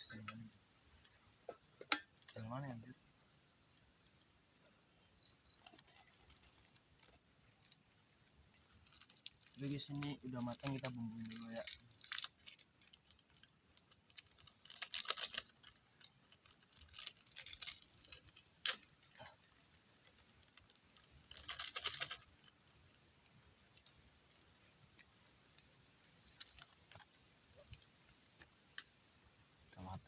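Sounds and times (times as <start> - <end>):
seasoning packets tearing: 13.9 - 19.0.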